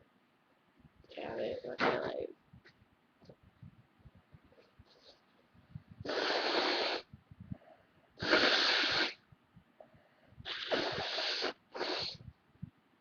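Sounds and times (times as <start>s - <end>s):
person blowing nose: 6.0s - 7.1s, 8.2s - 9.2s, 10.4s - 12.2s.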